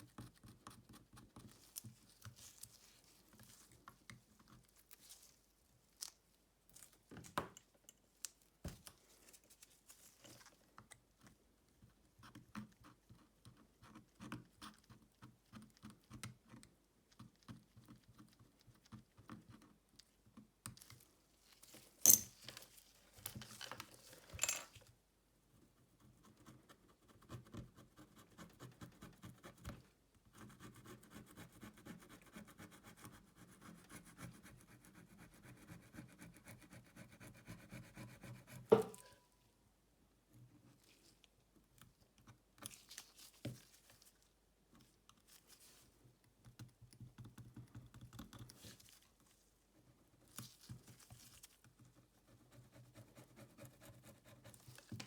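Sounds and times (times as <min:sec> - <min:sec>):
tools clicking and tapping on phone: 0:38.7 - 0:39.2.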